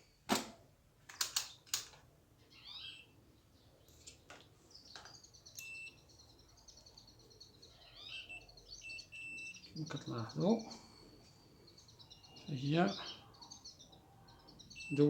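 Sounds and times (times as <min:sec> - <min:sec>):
small bird twittering: 0:02.5 - 0:03.2, 0:04.7 - 0:15.0.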